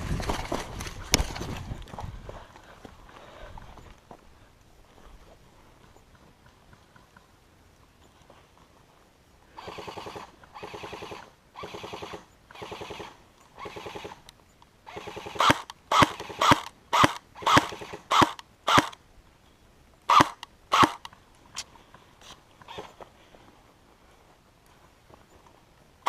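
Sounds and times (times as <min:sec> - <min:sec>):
airsoft gun bursts: 0:09.6 - 0:14.2, 0:14.8 - 0:19.0, 0:20.1 - 0:21.1
sharp airsoft gun shots: 0:15.0 - 0:19.0, 0:20.1 - 0:21.0.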